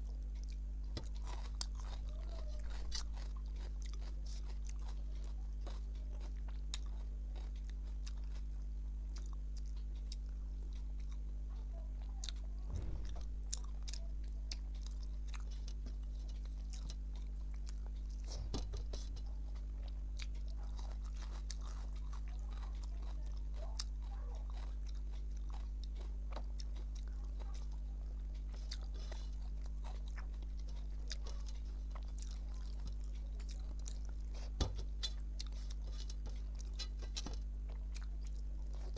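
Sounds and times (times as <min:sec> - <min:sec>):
mouth chewing food: 0:00.0 - 0:38.9
steady low hum: 0:00.0 - 0:38.9
knocks: 0:12.7 - 0:13.9.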